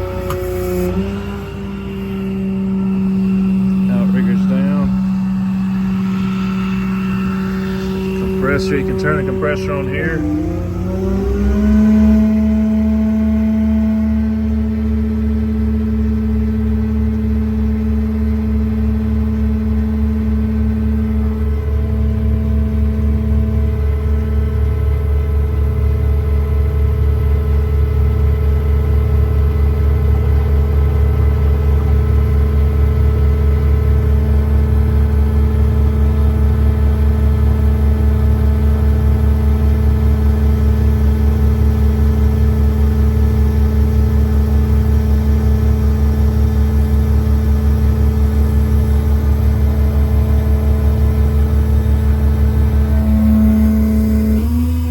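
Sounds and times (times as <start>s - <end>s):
hydraulic air compressor whining: 0.0s - 15.0s, 39.7s - 54.9s
diesel engine idling rumble: 0.0s - 54.8s.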